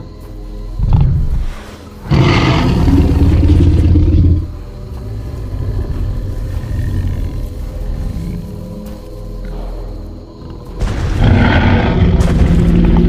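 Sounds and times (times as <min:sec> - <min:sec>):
rasping low growl: 0:00.8 - 0:08.8.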